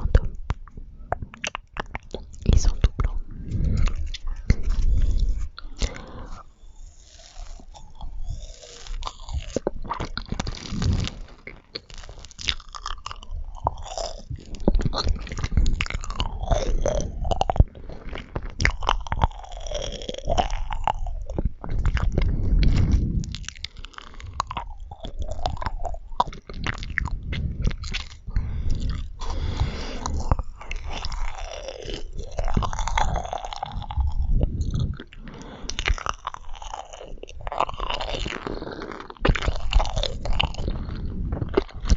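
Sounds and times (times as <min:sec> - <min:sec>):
chewing with mouth clicks: 0:00.0 - 0:41.9.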